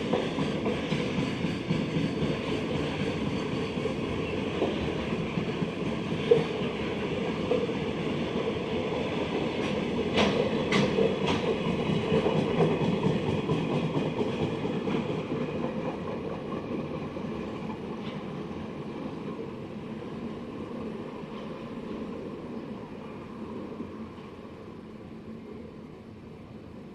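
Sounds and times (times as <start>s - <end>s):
train wheels clattering over rail joints: 9.6s - 18.4s.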